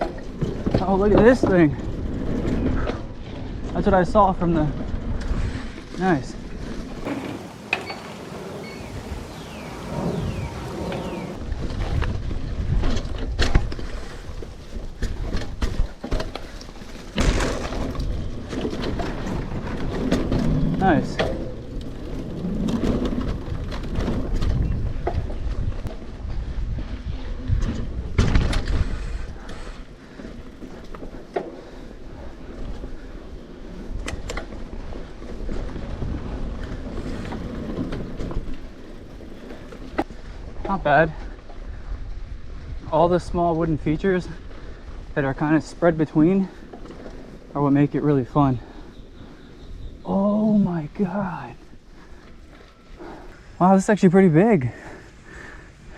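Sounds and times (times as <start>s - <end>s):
bike tyres rumbling on dirt: 0.0s - 55.9s
wind on microphone: 1.8s - 16.0s, 17.9s - 29.9s
bike knocking over bumps: 11.0s - 25.9s
bike rattling clicks: 33.8s - 35.6s.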